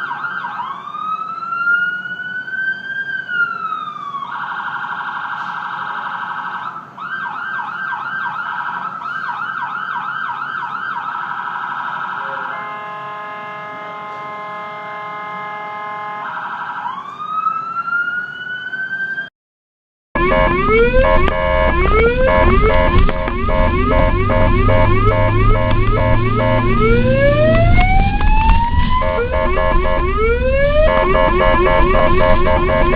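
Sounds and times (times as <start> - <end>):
ambulance siren: 0.0 - 19.3, 20.2 - 32.9.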